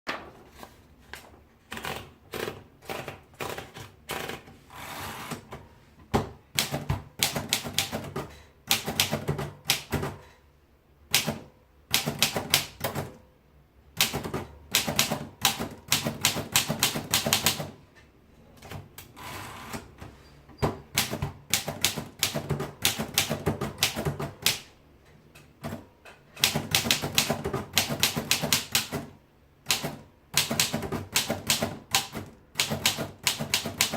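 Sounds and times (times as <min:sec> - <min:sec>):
typewriter keys clicking: 0:06.6 - 0:10.3, 0:11.1 - 0:13.2, 0:14.0 - 0:17.7, 0:20.9 - 0:24.7, 0:26.4 - 0:29.1, 0:29.7 - 0:33.9.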